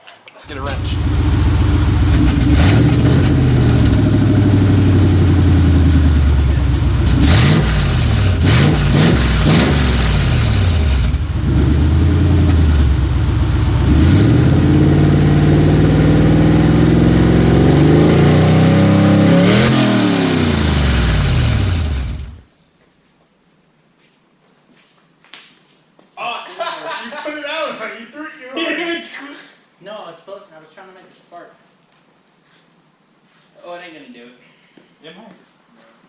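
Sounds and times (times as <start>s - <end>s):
car engine revving hard: 0.4s - 22.4s.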